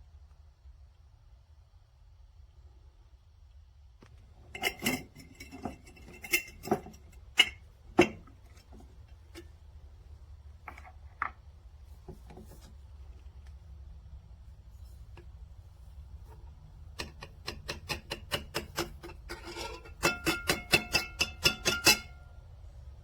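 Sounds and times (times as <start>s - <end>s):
hard objects clicking and knocking: 16.3s - 22.2s.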